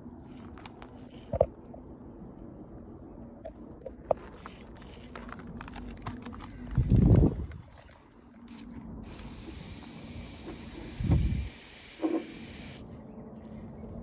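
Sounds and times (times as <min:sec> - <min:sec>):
light clicks and crunching: 0:00.2 - 0:01.8, 0:03.4 - 0:08.9.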